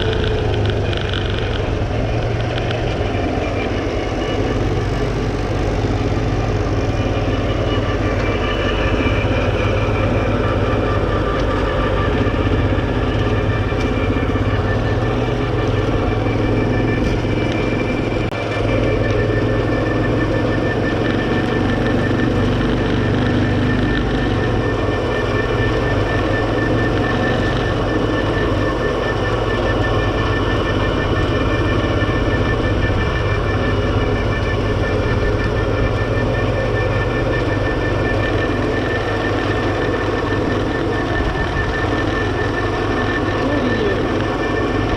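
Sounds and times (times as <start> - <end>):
quad bike engine running: 0.0 - 44.9.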